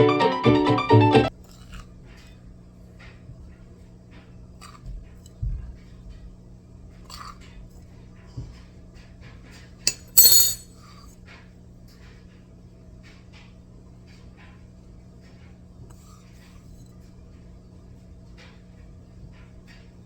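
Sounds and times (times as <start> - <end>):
small objects clinking: 9.9 - 10.6.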